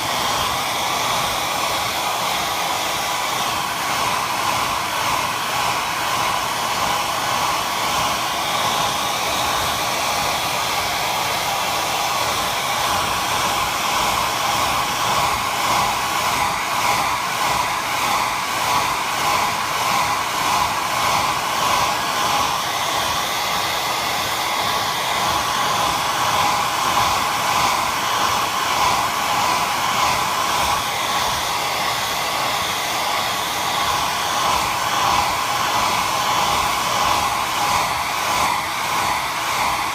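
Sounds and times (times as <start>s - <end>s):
hair dryer blowing: 0.0s - 39.9s.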